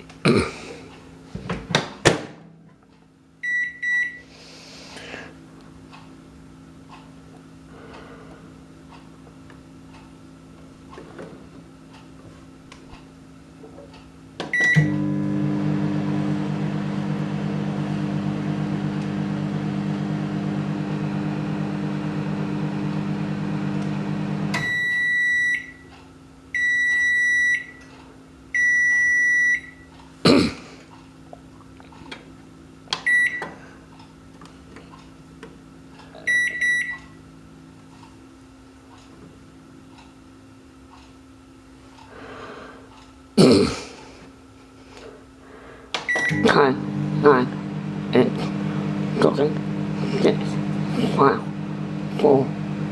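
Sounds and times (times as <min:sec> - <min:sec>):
microwave humming: 0:01.8 - 0:04.2, 0:14.2 - 0:25.9, 0:46.0 - 0:52.9
long microwave beeps: 0:03.4 - 0:04.2, 0:14.5 - 0:15.3, 0:24.5 - 0:25.9, 0:26.5 - 0:27.9, 0:28.5 - 0:29.9, 0:33.0 - 0:33.6, 0:36.2 - 0:37.2, 0:46.1 - 0:46.8
microwave button beeps: 0:03.4 - 0:04.2, 0:14.5 - 0:15.1, 0:24.6 - 0:25.8, 0:26.6 - 0:27.8, 0:28.6 - 0:29.8, 0:33.0 - 0:33.5, 0:36.3 - 0:37.2, 0:46.1 - 0:46.6.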